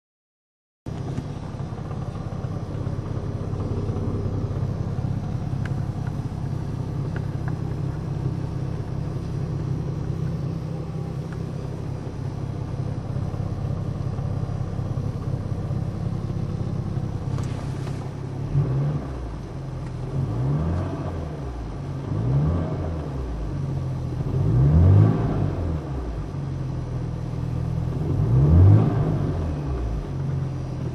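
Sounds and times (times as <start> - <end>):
car engine idling and revving: 0.9 - 30.9.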